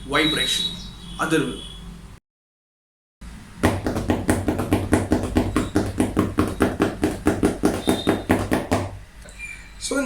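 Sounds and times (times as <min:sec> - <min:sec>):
rapid hand taps on object: 0:03.6 - 0:09.0.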